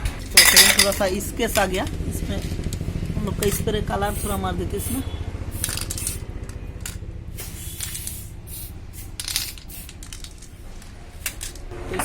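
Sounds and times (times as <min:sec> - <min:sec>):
low machine hum: 0:00.0 - 0:09.2
spray can hissing: 0:03.4 - 0:10.7.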